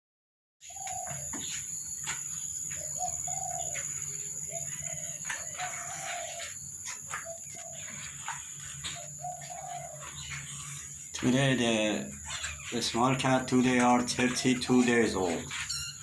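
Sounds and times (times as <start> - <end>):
doves cooing: 0.6 - 16.0.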